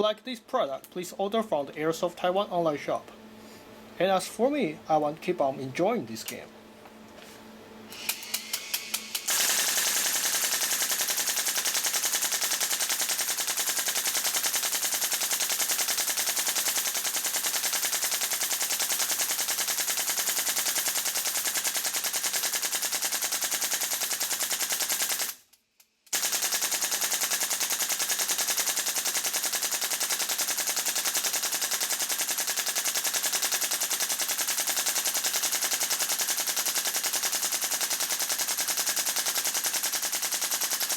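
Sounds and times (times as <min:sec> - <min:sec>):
airsoft gun rapid fire: 0:09.2 - 0:25.4, 0:26.1 - 0:40.9.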